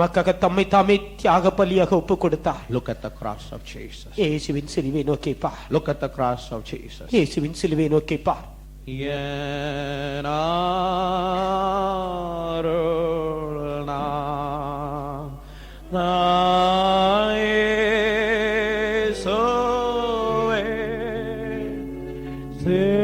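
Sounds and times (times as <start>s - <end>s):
person singing slow devotional song: 8.9s - 23.0s.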